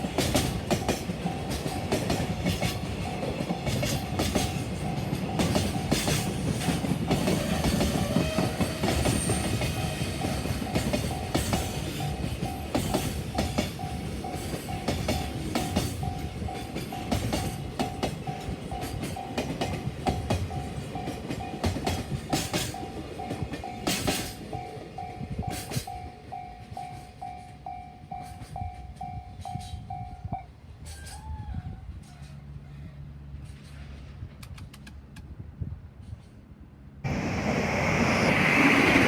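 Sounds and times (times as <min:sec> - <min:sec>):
train wheels rumbling on rail: 0:00.0 - 0:39.0
clacks over rail joints: 0:00.1 - 0:24.7
crossing warning bell ringing: 0:00.4 - 0:30.5.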